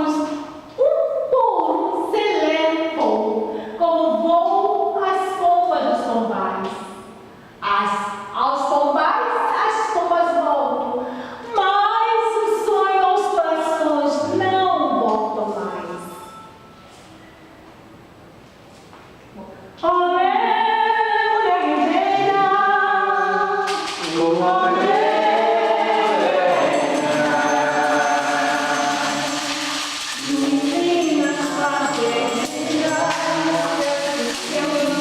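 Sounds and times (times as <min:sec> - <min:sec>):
small choir singing in unison: 0:20.2 - 0:35.0
hissing shaker percussion: 0:23.0 - 0:35.0.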